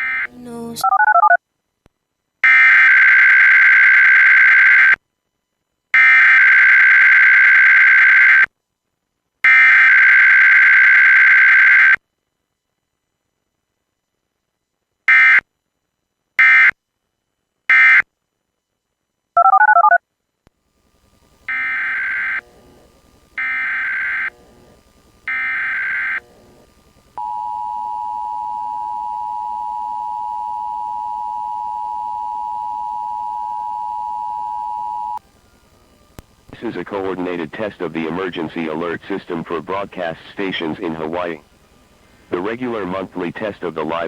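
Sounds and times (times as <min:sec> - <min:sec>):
screechy data bursts: 0:21.5 - 0:22.6, 0:23.4 - 0:26.6.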